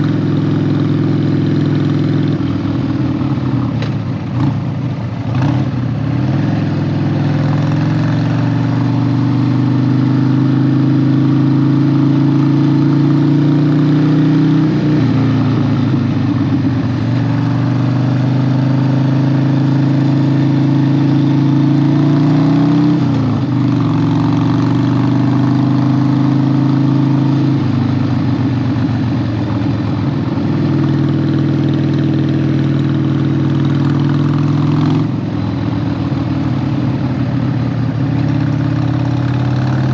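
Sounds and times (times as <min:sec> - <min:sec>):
motorcycle engine revving through gears: 0:00.0 - 0:39.9.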